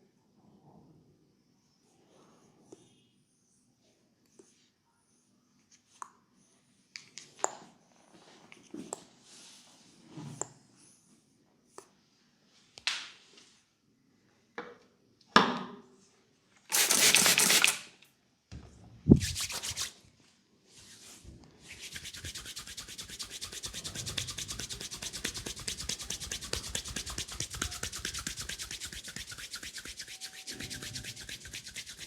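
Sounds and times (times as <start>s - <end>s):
hands rubbing head: 16.7s - 17.8s, 19.1s - 20.0s, 21.7s - 32.0s.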